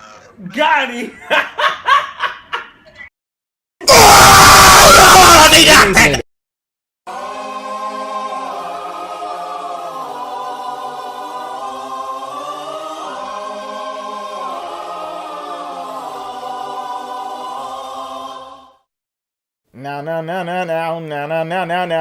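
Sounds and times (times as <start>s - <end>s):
choir singing held chords: 7.1s - 18.9s.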